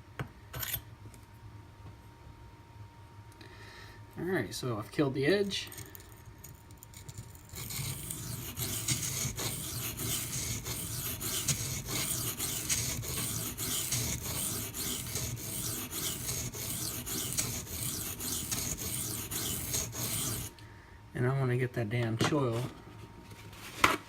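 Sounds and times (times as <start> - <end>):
knife scraping on sharpening stone: 7.0 - 20.5.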